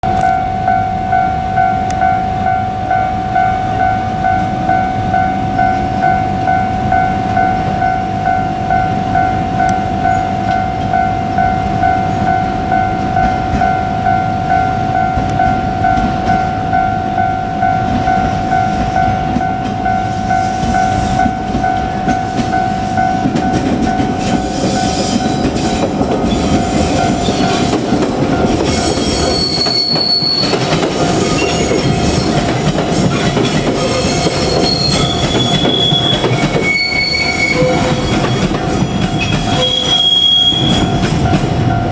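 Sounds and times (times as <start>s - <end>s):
level crossing warning bell: 0.0s - 41.9s
electric train running: 1.6s - 41.9s
wheels on rail joints: 9.2s - 41.9s
high wheel squeal: 24.2s - 41.8s.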